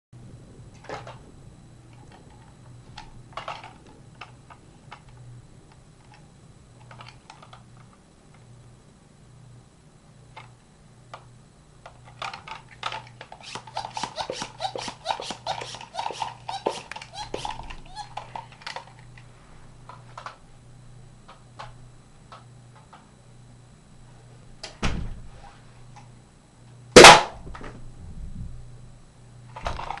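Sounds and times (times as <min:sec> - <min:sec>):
plastic toy blaster clicks: 0:12.2 - 0:19.0.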